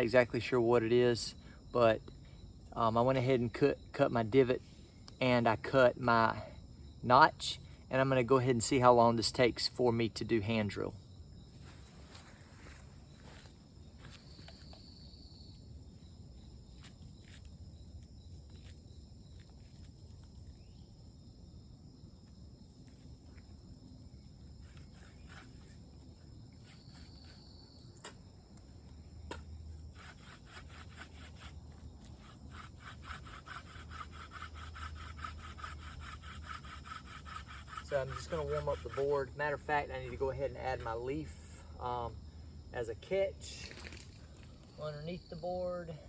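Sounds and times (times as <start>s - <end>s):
drill spindle rubbing wood: 29.9s - 39.7s.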